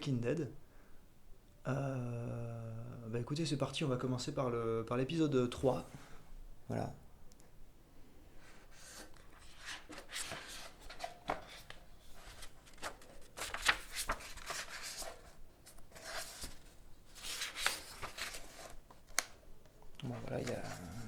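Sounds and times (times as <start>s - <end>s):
pages being turned: 8.8s - 19.4s, 20.0s - 21.0s.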